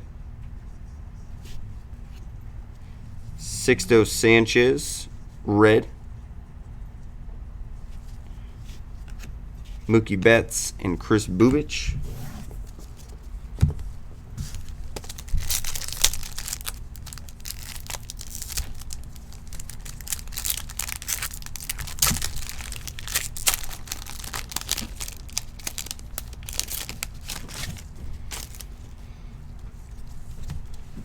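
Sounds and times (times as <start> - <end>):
foil wrapper tearing and crinkling: 14.5 - 28.9.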